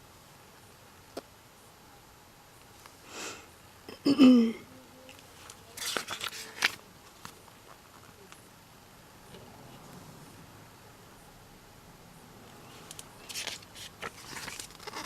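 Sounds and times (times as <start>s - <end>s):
woman breathing: 3.0s - 3.5s.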